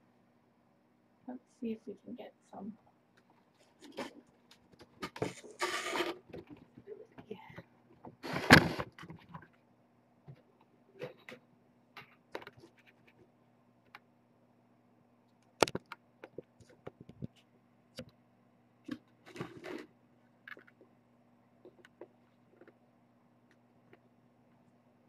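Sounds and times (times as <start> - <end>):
small clicks and soft knocks: 15.2 - 18.2, 21.6 - 22.8.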